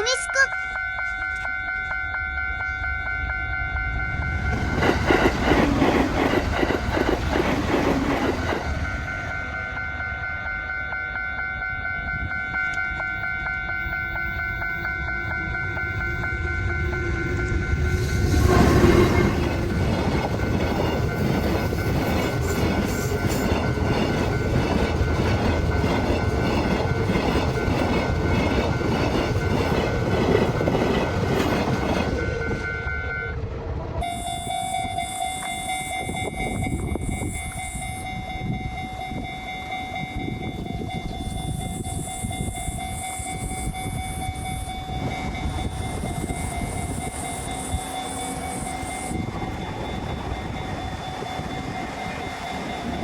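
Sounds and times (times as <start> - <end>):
crossing warning bell ringing: 0.0 - 53.0
train wheels clacking: 4.1 - 32.7, 34.8 - 53.0
train horn blast: 8.8 - 19.9, 32.2 - 33.4, 34.0 - 40.0.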